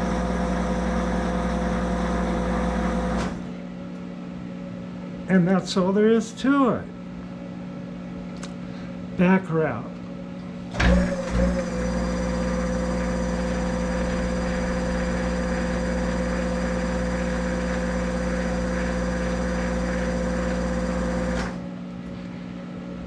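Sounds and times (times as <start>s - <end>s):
lathe motor whine and hum: 0.0s - 3.5s, 10.8s - 21.8s.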